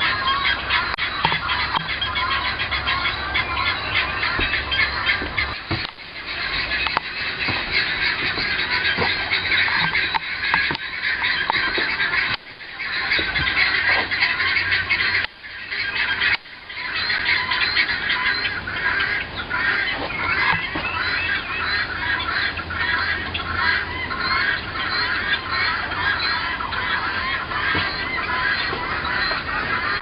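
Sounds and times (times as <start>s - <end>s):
guinea fowl calling: 0.0s - 30.0s.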